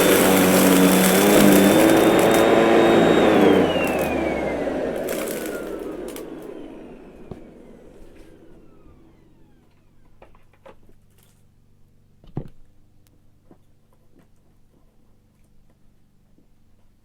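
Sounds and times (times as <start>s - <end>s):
vacuum motor winding down: 0.0s - 9.9s.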